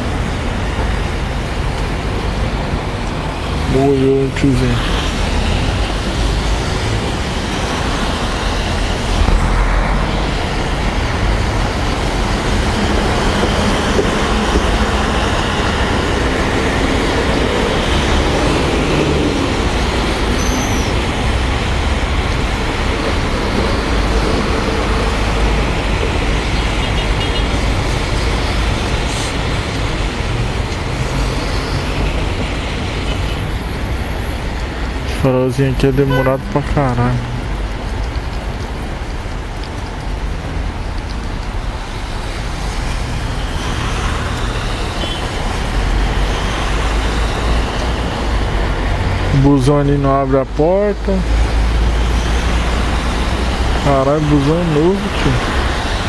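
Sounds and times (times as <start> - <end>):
wind rushing over microphone: 0.0 - 35.0
tyre hiss on wet road: 26.5 - 35.0, 37.4 - 49.3, 51.0 - 56.0.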